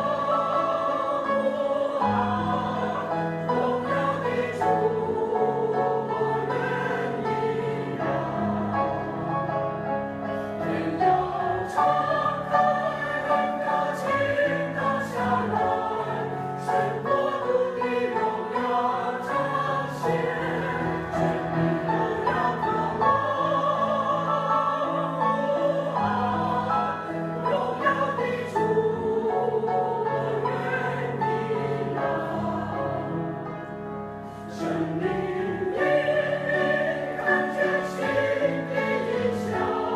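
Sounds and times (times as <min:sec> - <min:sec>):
choir singing: 0:00.0 - 0:39.9.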